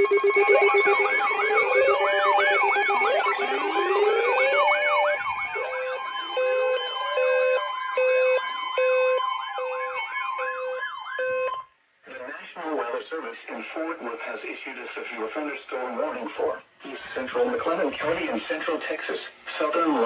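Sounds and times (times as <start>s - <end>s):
electronic sirens yelping: 0.0s - 11.6s
two-note hi-lo siren wail: 0.0s - 11.6s
steady alarm tone: 0.0s - 11.7s.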